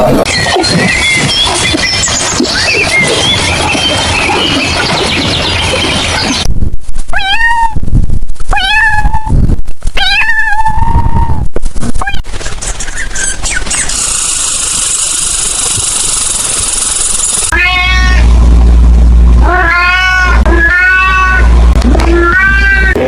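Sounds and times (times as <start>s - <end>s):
cat meowing: 7.1s - 7.8s, 8.5s - 9.4s, 10.0s - 12.2s, 17.5s - 18.3s, 19.4s - 23.0s.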